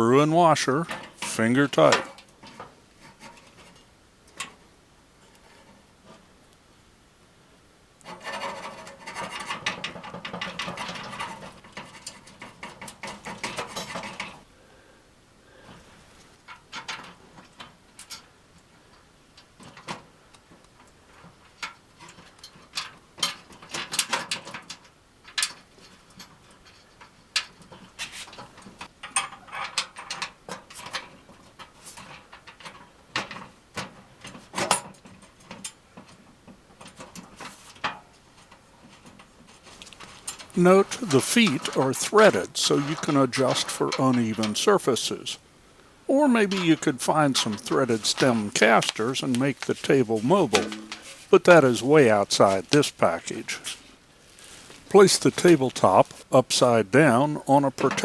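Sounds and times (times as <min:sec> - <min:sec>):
hardware rattling and scraping: 0:00.0 - 0:04.6, 0:08.0 - 0:14.5, 0:15.6 - 0:58.0
metal parts clicking and knocking: 0:08.1 - 0:14.4, 0:19.6 - 0:36.2, 0:36.8 - 0:45.3, 0:46.2 - 0:53.8.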